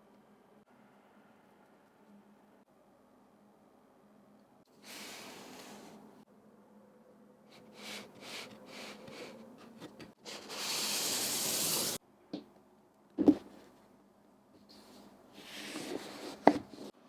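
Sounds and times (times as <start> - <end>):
sliding hiss: 10.3 - 12.0.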